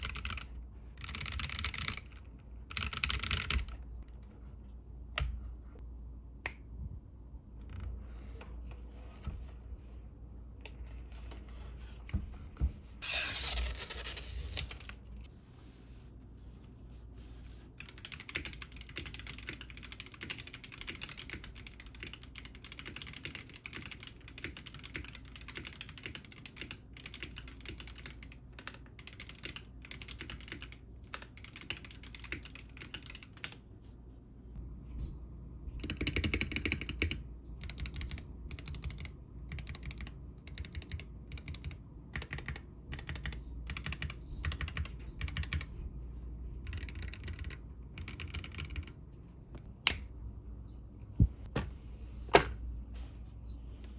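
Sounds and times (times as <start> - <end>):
mechanical keyboard typing: 0.0 - 3.8, 17.8 - 33.6, 35.8 - 45.7, 46.6 - 49.0.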